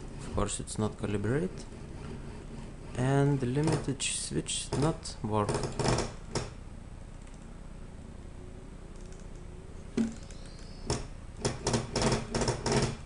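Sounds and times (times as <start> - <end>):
irregular sharp clicks: 7.1 - 7.5, 8.9 - 12.9.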